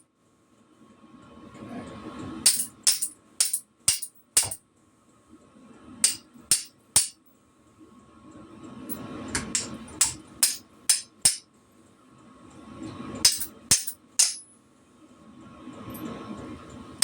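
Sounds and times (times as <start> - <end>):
hammer tapping metal: 2.5 - 4.6, 6.0 - 7.2, 9.4 - 11.5, 13.2 - 14.5.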